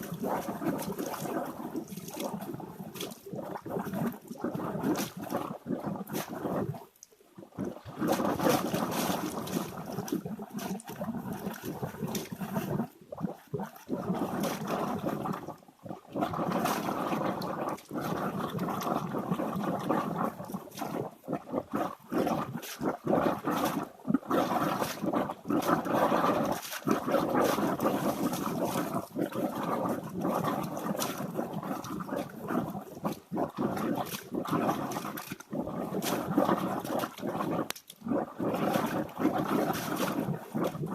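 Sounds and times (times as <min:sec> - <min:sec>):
running water splashing: 0:00.0 - 0:03.3.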